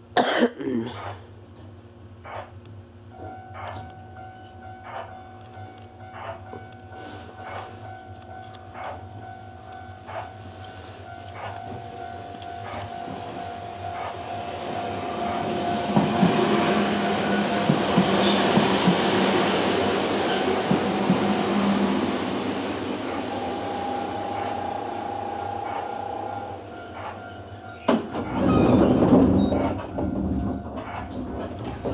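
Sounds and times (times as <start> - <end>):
electric train running: 3.2 - 31.9
pneumatic doors opening rush: 14.0 - 31.9
wheels and brakes squealing: 20.2 - 22.2, 23.0 - 30.0.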